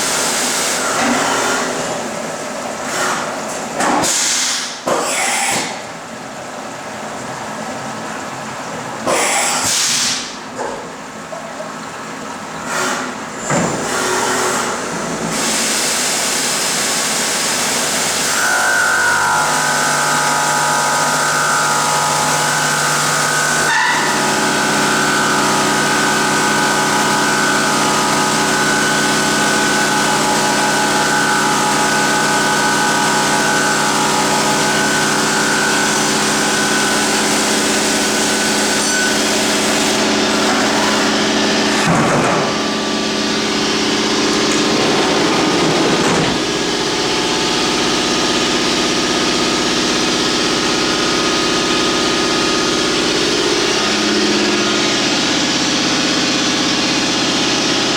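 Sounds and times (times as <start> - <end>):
machining center running: 13.2 - 57.9.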